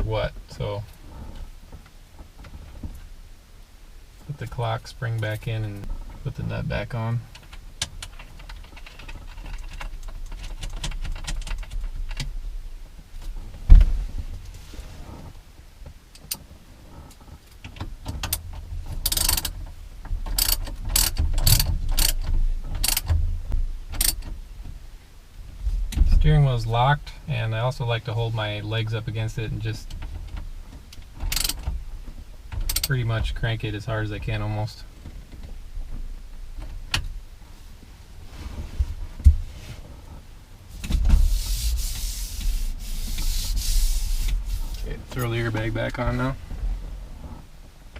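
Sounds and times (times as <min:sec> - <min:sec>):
continuous rasping noise: 0:04.2 - 0:24.8, 0:25.5 - 0:37.6, 0:38.2 - 0:47.9
socket ratchet clicking: 0:19.0 - 0:19.5, 0:20.3 - 0:23.2, 0:23.9 - 0:24.3, 0:31.3 - 0:31.6.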